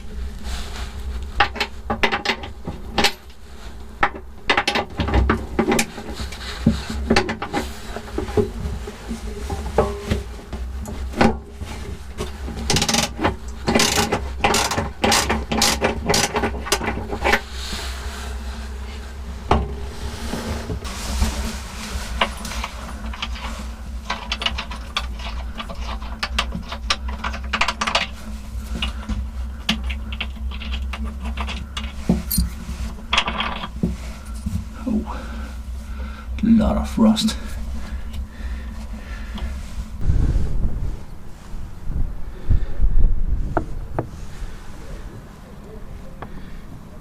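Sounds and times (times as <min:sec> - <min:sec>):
steady low hum: 0:00.0 - 0:47.0
mechanical clicks and knocks: 0:12.2 - 0:17.5.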